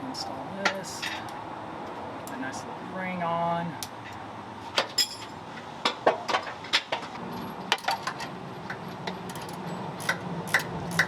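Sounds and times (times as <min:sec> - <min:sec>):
metal tools clinking: 0:07.4 - 0:09.9.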